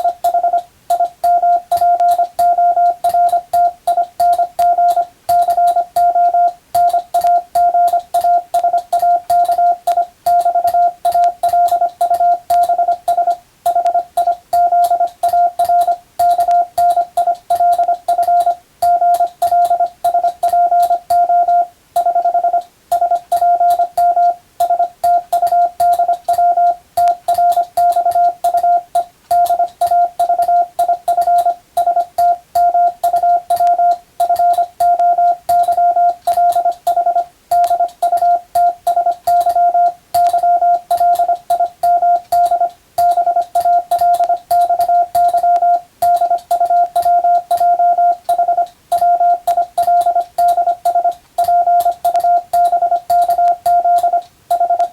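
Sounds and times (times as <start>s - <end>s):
faint keying clicks: 0.0s - 54.9s
morse code tone: 0.0s - 54.9s.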